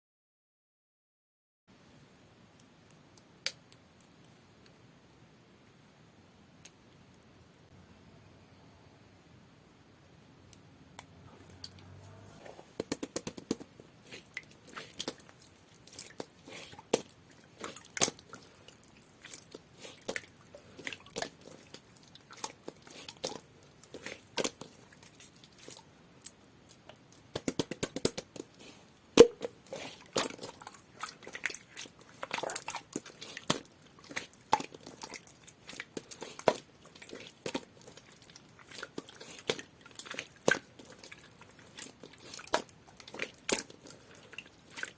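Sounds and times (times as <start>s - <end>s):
sharp slime pop: 29.2s - 29.5s.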